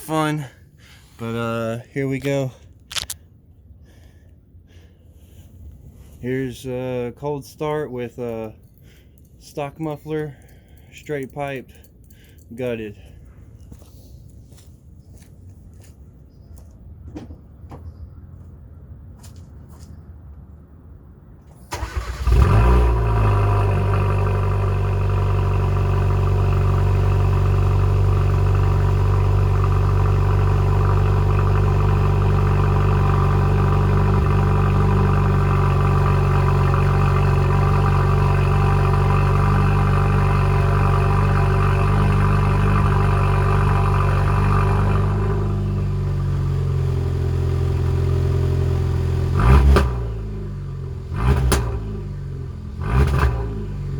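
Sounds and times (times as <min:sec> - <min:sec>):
car engine cranking: 0:21.5 - 0:25.7, 0:26.5 - 0:45.6
car engine idling: 0:21.7 - 0:52.9.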